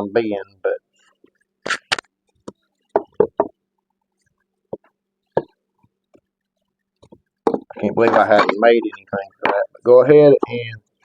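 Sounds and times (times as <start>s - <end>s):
wooden boards knocking: 2.9s - 3.6s, 7.0s - 8.8s.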